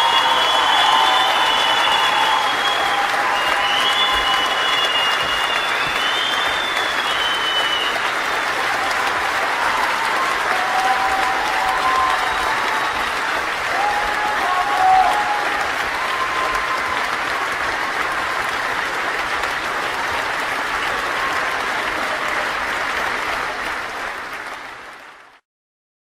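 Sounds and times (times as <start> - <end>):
faint whoops: 0.0 - 17.8
crowd applauding: 0.0 - 25.4.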